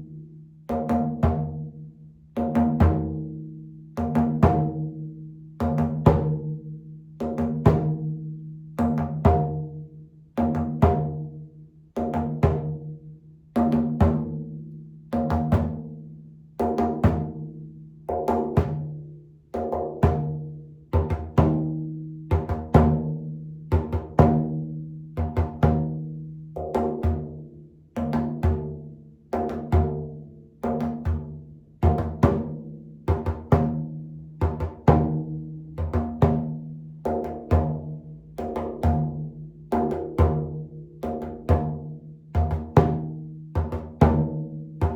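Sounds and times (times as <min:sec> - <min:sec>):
frame drum beating: 0:29.4 - 0:44.9.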